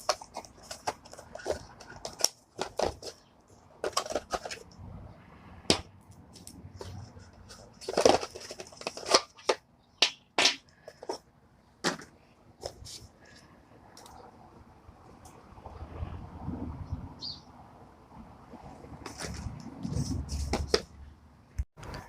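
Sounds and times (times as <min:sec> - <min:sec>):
packaging rustling and crinkling: 0:00.0 - 0:04.6, 0:06.8 - 0:09.6.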